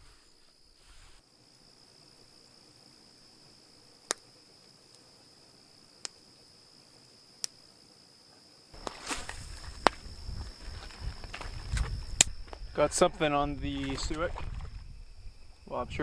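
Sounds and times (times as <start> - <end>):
insects droning: 0.0 - 16.0
sharp snaps: 12.2 - 12.4.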